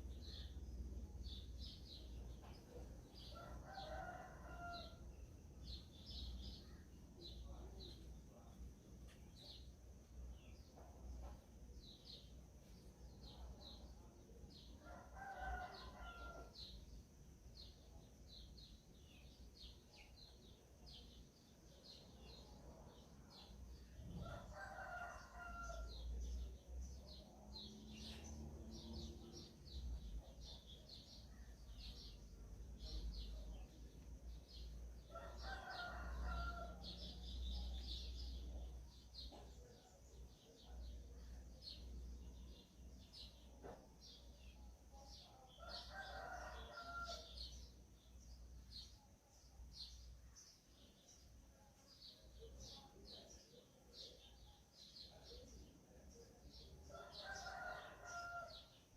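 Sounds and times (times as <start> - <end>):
small birds chirping: 0.0 - 58.9
rooster crowing: 3.4 - 5.0, 24.2 - 25.9, 35.1 - 36.8, 45.6 - 47.3, 56.9 - 58.5.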